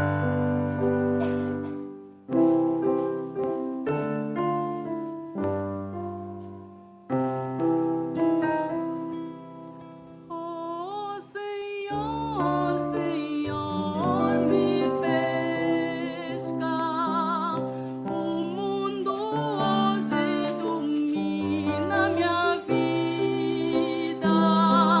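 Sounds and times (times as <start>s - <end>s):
slow piano chords: 0.0s - 25.0s
singing voice with vibrato: 10.4s - 25.0s.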